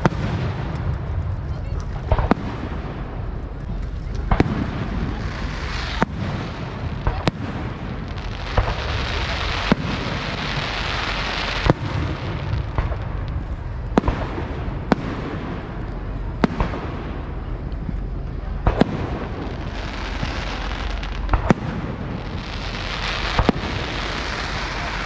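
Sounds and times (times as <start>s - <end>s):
fireworks bangs: 0.0s - 25.0s
fireworks rumble and crackle: 0.0s - 25.0s.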